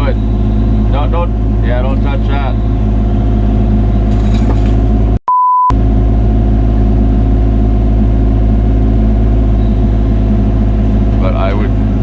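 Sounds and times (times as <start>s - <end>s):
diesel engine running: 0.0s - 12.0s
short steady beep: 5.3s - 5.8s.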